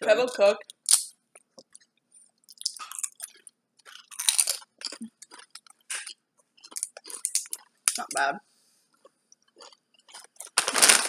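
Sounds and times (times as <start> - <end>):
person chewing crunchy chips: 0.3 - 8.0, 8.9 - 11.0.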